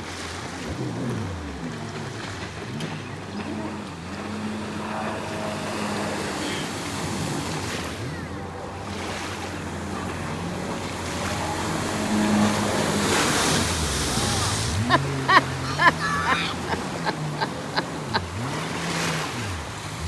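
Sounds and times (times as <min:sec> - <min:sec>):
jet ski engines revving: 0:00.0 - 0:20.0
water wash: 0:00.0 - 0:20.0.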